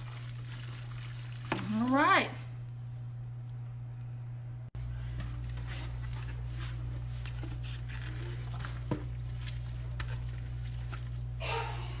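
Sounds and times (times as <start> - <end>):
spoon stirring wet mixture: 0.0 - 2.1, 4.8 - 12.0
steady low hum: 0.0 - 12.0.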